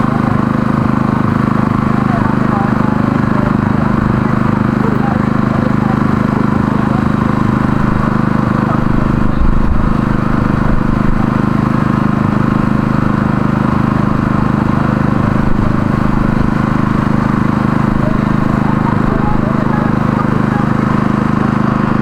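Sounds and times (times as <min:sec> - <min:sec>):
motor humming steadily: 0:00.0 - 0:22.0.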